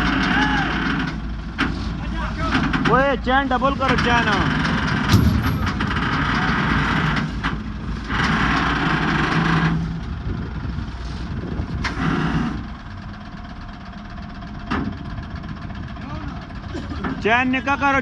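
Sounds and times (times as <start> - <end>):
sharp metal knocks: 5.1 - 6.4.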